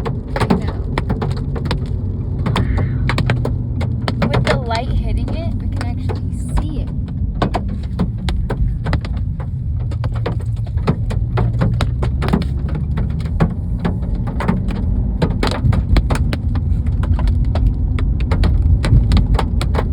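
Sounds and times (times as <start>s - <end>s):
car road rumble: 0.0s - 19.9s
hail hitting a car: 0.0s - 19.9s.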